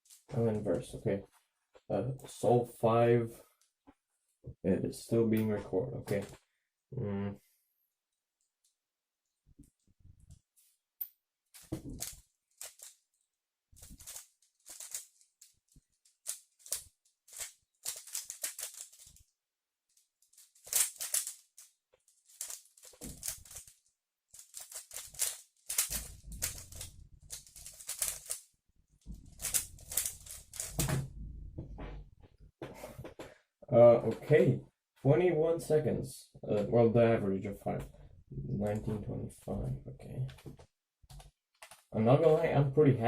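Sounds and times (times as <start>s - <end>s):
speedcube clicking: 11.9s - 13.0s, 13.8s - 19.3s, 19.9s - 28.5s, 29.2s - 30.9s.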